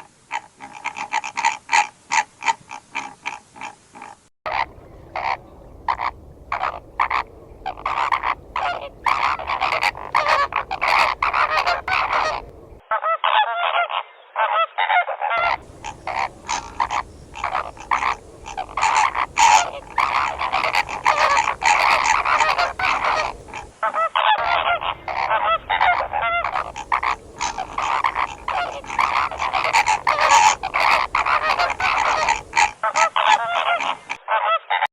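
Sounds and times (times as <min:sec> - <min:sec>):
flamingos honking: 0:00.0 - 0:12.9, 0:15.4 - 0:34.6.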